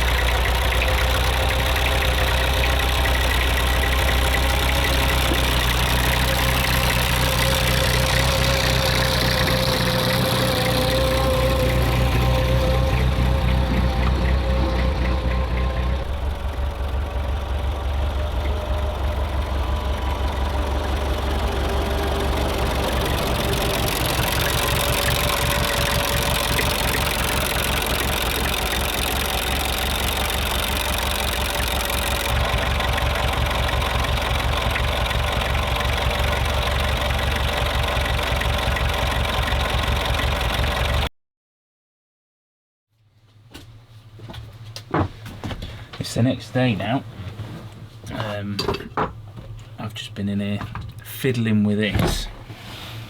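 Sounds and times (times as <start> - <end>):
engine idling: 0.0 - 41.1.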